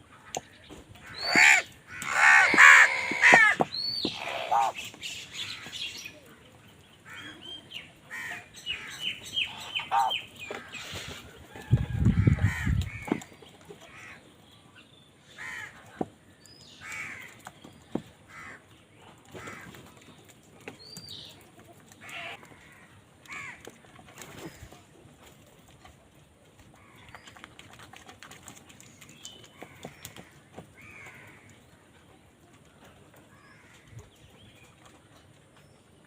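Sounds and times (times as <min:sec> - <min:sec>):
crows cawing: 0:01.0 - 0:04.8, 0:12.1 - 0:13.2, 0:15.4 - 0:15.8, 0:22.0 - 0:23.7.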